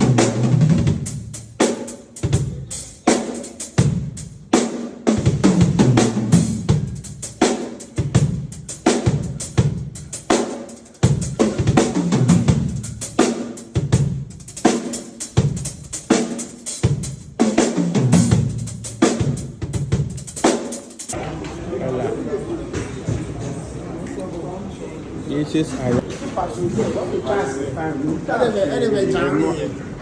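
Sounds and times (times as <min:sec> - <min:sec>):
drum kit playing: 0:00.0 - 0:21.2.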